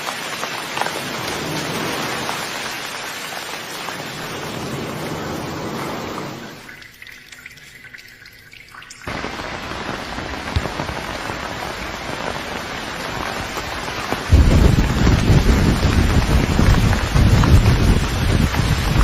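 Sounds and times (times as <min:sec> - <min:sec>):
steady rain: 0:00.0 - 0:07.1, 0:09.0 - 0:19.0
faint drips: 0:05.2 - 0:09.1.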